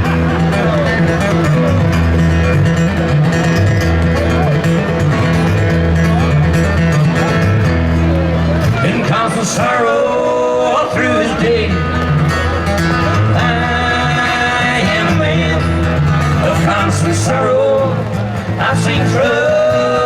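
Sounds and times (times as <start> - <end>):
bass: 0.0 - 20.0
guitar: 0.0 - 20.0
person singing: 8.8 - 12.1, 13.1 - 20.0.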